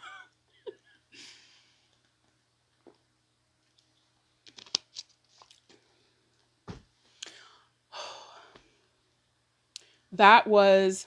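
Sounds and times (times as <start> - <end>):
soft breath: 7.0 - 9.0.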